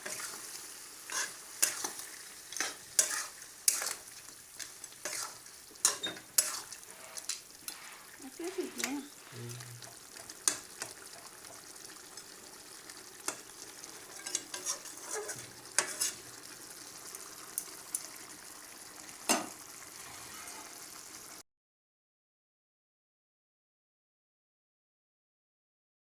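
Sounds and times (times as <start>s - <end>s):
utensil scraping a pot: 0.0s - 0.5s, 1.1s - 4.1s, 4.9s - 10.9s, 13.3s - 16.3s
curry sizzling in a pot: 0.0s - 21.4s.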